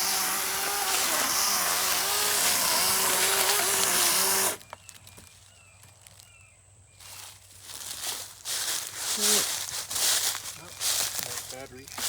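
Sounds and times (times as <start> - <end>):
chainsaw cutting wood: 0.0 - 4.7.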